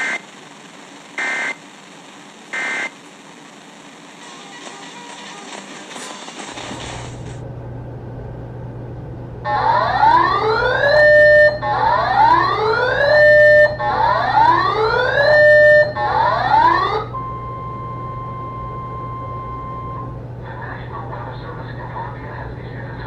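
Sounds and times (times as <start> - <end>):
electronic whooping siren: 1.2 - 1.6, 2.6 - 2.9, 9.4 - 20.1
steady alarm tone: 1.2 - 1.6, 2.6 - 2.9, 9.4 - 20.2
low steady hum: 6.6 - 23.0.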